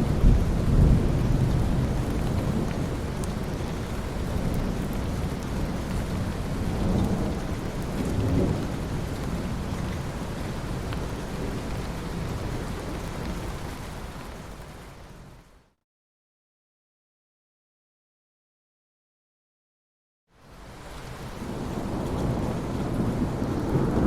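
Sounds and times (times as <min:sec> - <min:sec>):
rolling thunder: 0:00.0 - 0:03.0, 0:21.4 - 0:24.0
heavy rain: 0:00.0 - 0:15.8, 0:20.3 - 0:24.0.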